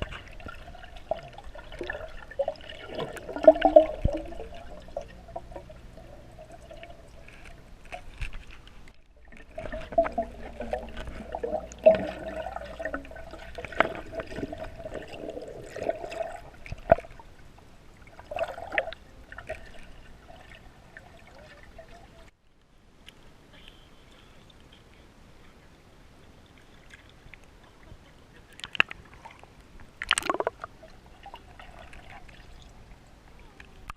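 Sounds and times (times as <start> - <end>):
water sloshing and gurgling: 0.0 - 22.3, 26.1 - 33.9
sharp splashes and knocks: 30.0 - 30.6.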